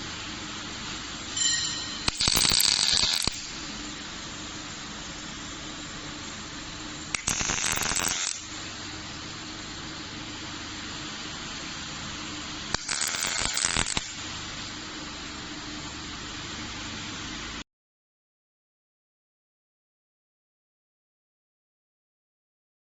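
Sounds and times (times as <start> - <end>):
steady background hiss: 0.0 - 17.6
welding torch crackling: 1.2 - 9.0, 11.0 - 15.0.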